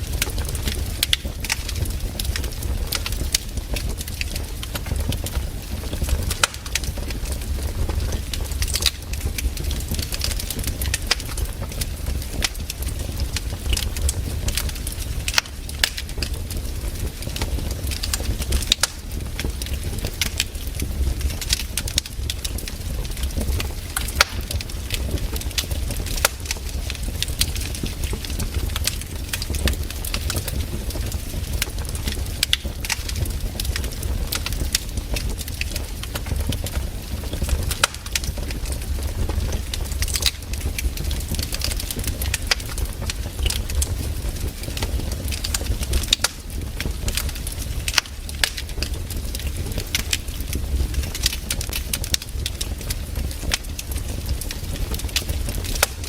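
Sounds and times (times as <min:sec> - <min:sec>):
campfire crackling and popping: 0:00.0 - 0:56.0
fire low rumble: 0:00.0 - 0:56.0.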